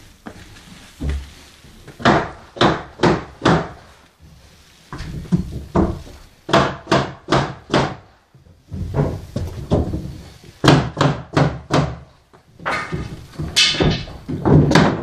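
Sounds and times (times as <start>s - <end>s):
heavy knocks: 5.0s - 8.0s, 8.6s - 15.0s.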